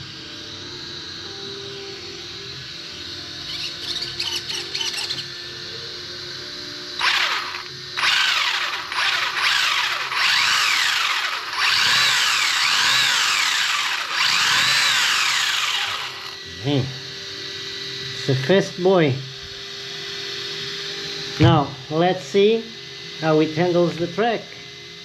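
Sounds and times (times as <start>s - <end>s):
electric motor whine: 0.0s - 21.6s.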